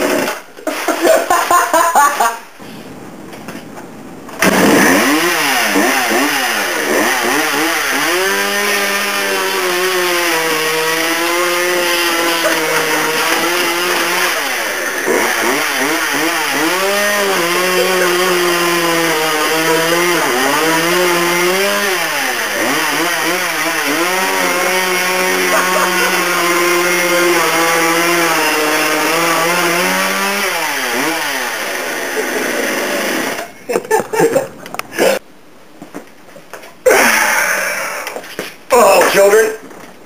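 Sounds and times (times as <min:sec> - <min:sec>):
chainsaw revving and cutting: 0:00.0 - 0:01.1, 0:04.4 - 0:33.5.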